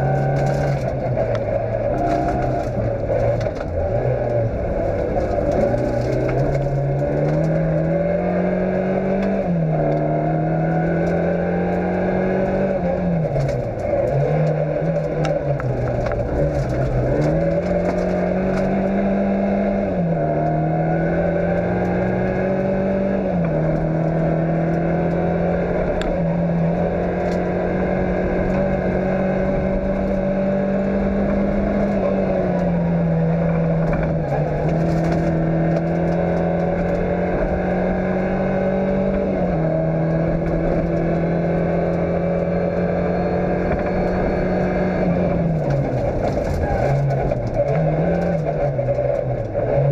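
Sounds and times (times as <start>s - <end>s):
tyres rumbling on gravel: 0.0s - 8.4s, 12.8s - 19.0s, 31.0s - 42.2s, 43.7s - 49.9s
car engine at high revs: 0.0s - 49.9s.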